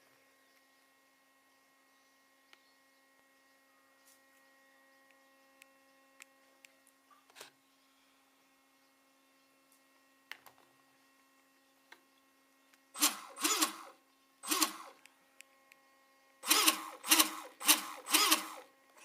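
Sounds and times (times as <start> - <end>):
electric motor revving: 13.0 - 15.1, 16.4 - 19.0.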